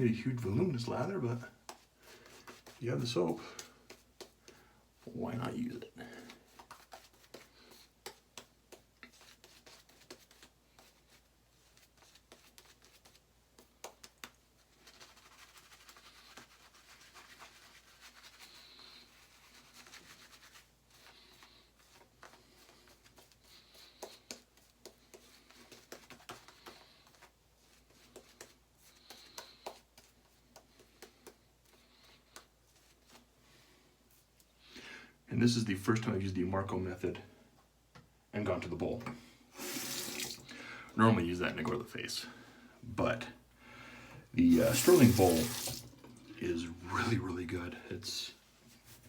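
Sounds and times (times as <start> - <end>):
shaving brush swishing lather: 0.8 - 4.4, 14.7 - 22.0, 39.6 - 40.4, 44.4 - 45.9.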